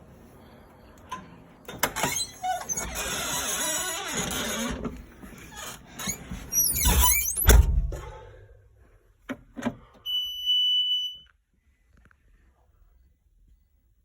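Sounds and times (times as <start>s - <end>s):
squeaking: 1.8s - 7.7s.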